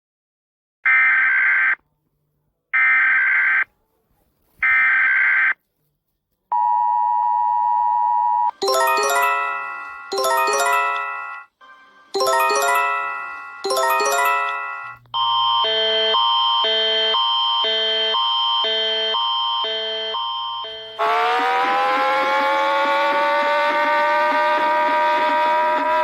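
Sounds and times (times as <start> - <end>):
electronic chime falling notes: 8.6 - 11.4, 12.2 - 14.9
two-tone attention signal: 8.6 - 11.5.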